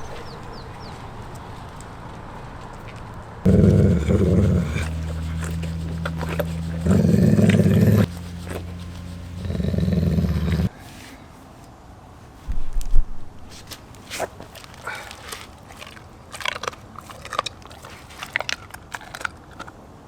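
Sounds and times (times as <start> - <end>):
dog growling low: 3.5 - 10.7.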